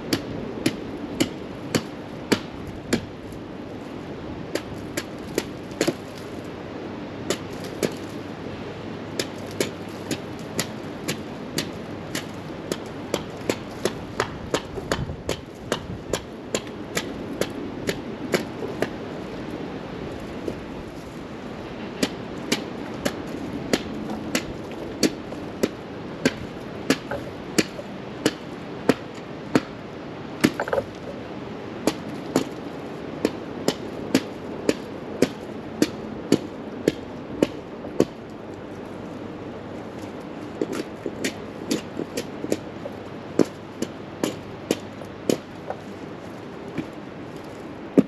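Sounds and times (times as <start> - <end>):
rhythmic chopping strikes: 9.2 - 18.9, 22.0 - 29.7.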